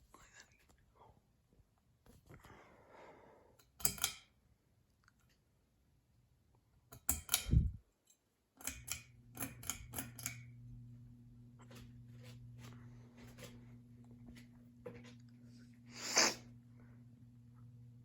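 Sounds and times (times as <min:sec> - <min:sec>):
ceiling fan motor humming: 0:07.0 - 0:07.8, 0:08.6 - 0:18.0.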